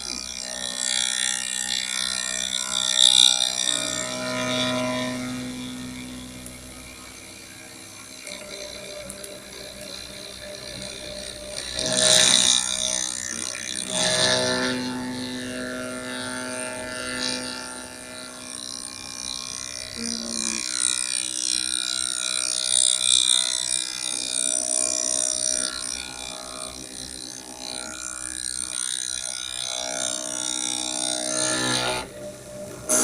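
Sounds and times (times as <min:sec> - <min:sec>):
hissing cutting noise: 0:00.0 - 0:33.0
milling machine motor whine: 0:00.0 - 0:33.0.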